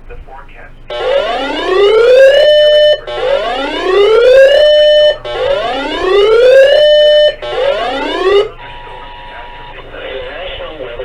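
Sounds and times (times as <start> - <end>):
electronic whooping siren: 0.9 - 8.6.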